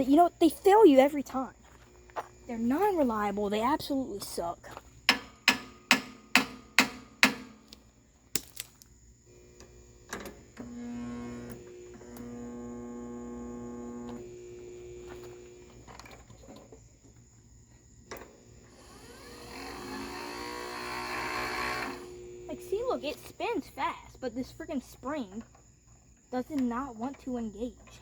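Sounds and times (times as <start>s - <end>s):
sharp knocks: 5.1s - 7.6s
starter motor whirring: 9.3s - 16.4s, 18.1s - 23.5s.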